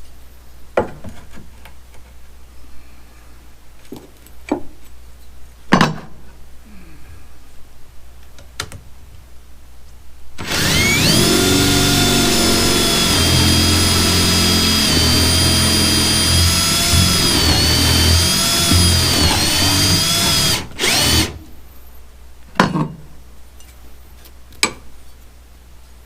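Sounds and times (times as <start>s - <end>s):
electric drill boring into wood: 10.4s - 21.4s.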